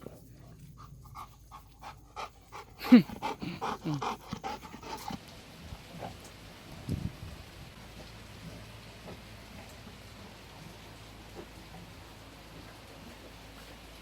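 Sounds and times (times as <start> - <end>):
dog panting: 0.6 - 5.2.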